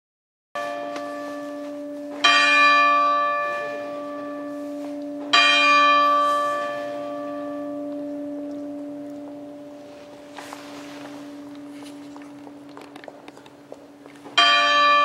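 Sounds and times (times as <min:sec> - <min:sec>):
church bell ringing: 0:00.6 - 0:15.0
low hum: 0:07.4 - 0:14.4.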